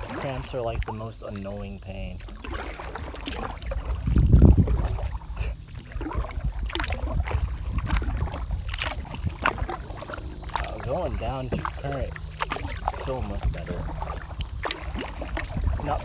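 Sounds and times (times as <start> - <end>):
paddle strokes splashing: 0.0 - 16.0
low rumble: 3.4 - 16.0.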